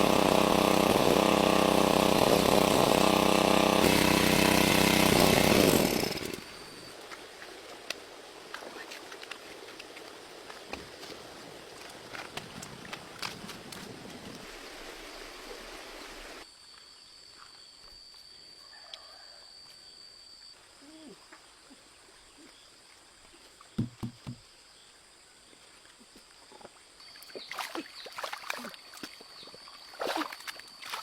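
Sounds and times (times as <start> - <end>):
rushing stream water: 7.0 - 16.4.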